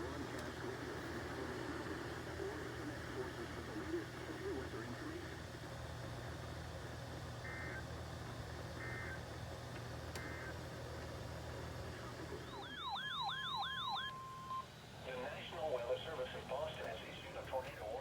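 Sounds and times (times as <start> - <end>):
steady hiss and hum: 0.0 - 12.6, 14.1 - 18.0
warbling siren-like tone: 12.5 - 14.6.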